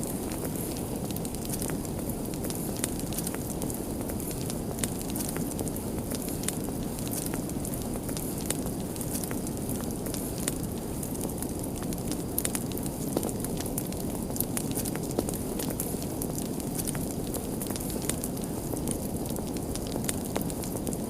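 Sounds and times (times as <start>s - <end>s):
fire crackling and popping: 0.0s - 21.0s
low rush of burning: 0.0s - 21.0s.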